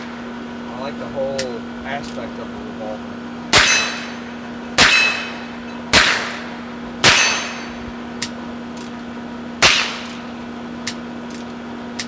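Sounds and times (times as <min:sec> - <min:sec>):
revolver shots: 0:03.5 - 0:07.8, 0:09.6 - 0:10.3.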